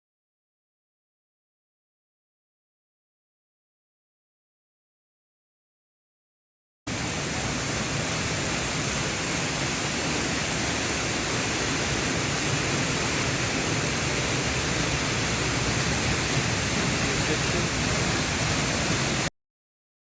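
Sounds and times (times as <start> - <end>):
waterfall rushing: 6.9 - 19.3.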